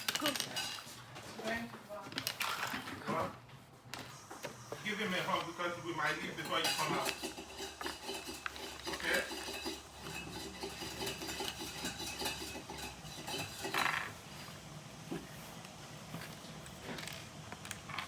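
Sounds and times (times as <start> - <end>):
small hard pieces clinking: 0.0 - 0.9.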